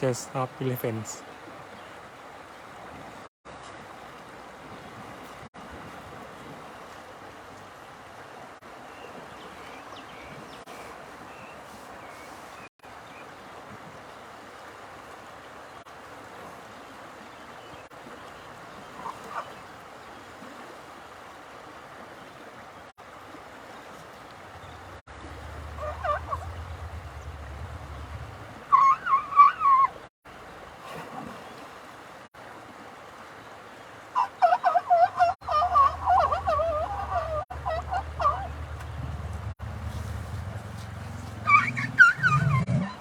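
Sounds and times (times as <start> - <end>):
warbling animal calls: 25.4 - 30.1, 34.2 - 39.5, 40.3 - 43.0.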